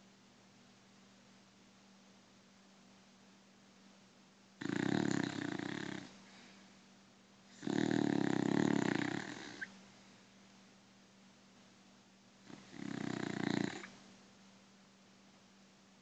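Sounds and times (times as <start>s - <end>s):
dog snoring: 4.6s - 6.2s, 7.5s - 9.7s, 12.4s - 14.0s.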